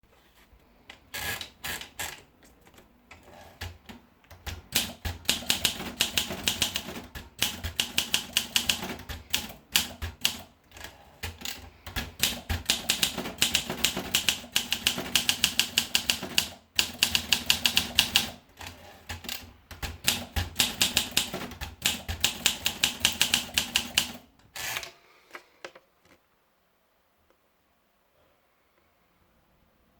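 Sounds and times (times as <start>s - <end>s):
typewriter keystrokes: 3.6s - 24.3s.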